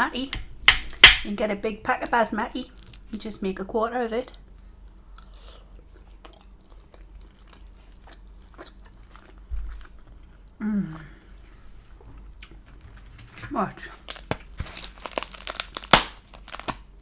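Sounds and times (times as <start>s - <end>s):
close chewing: 4.3s - 13.1s.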